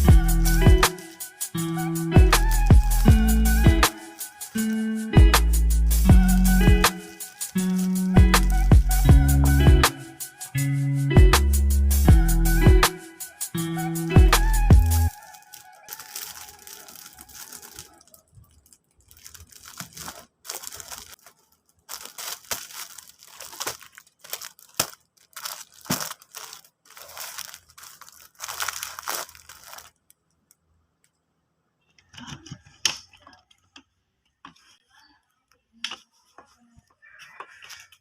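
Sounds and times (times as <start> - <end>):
packing materials crinkling and tearing: 6.2 - 8.7, 15.1 - 30.2.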